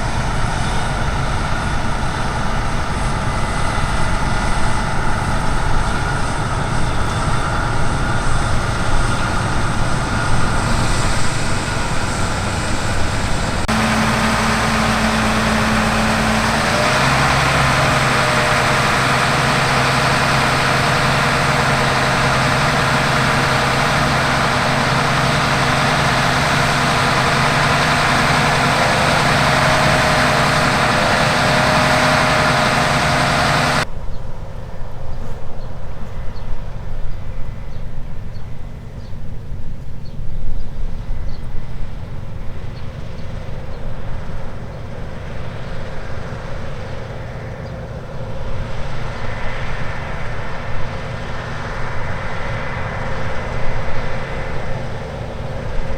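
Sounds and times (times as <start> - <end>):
diesel engines running: 0.0 - 33.9, 42.1 - 55.9.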